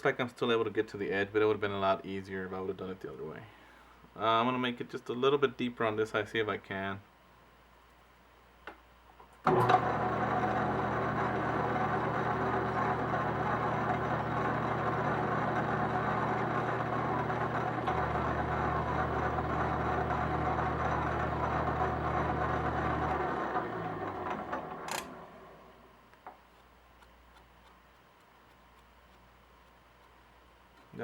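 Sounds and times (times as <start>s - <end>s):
lathe machine hum: 9.5s - 25.7s
lathe winding down: 9.5s - 25.7s.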